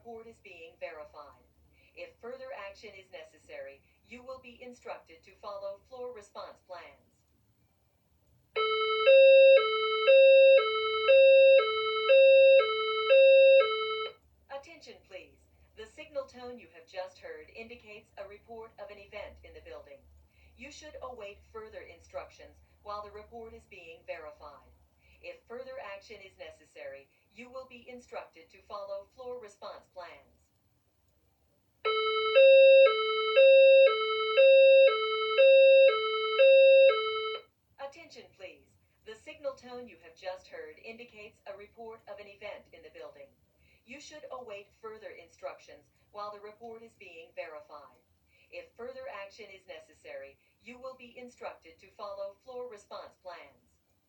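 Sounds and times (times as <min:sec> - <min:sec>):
hi-lo alarm tone: 0:08.6 - 0:14.2, 0:31.9 - 0:37.4.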